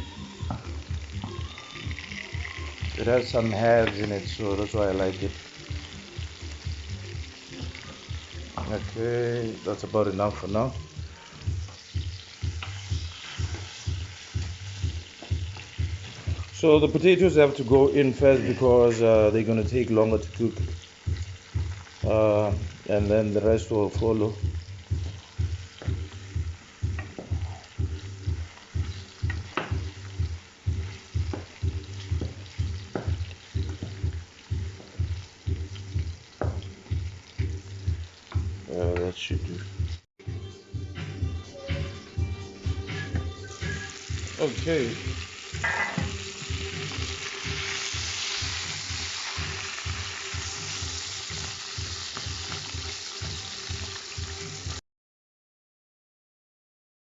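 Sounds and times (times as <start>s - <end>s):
potatoes sizzling in hot oil: 0.0s - 40.0s, 43.5s - 54.8s
background music with bass beat: 0.0s - 54.8s
spoon knocking on pot: 28.8s - 29.9s, 45.6s - 46.2s.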